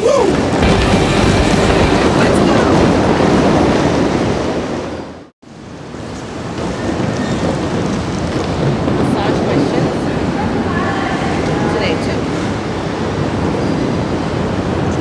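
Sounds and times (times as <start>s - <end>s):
roller skate wheels rumbling: 6.0s - 11.6s.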